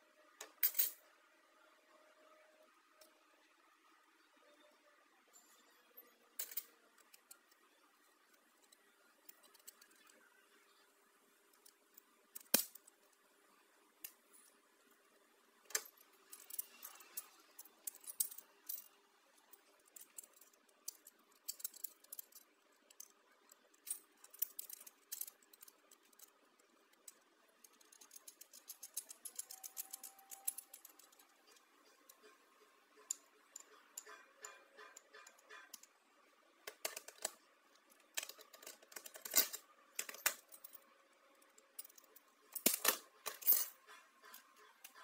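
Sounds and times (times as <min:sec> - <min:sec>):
faint steady hum: 0:00.0 - 0:45.0
small hard objects clicking: 0:20.2 - 0:35.9.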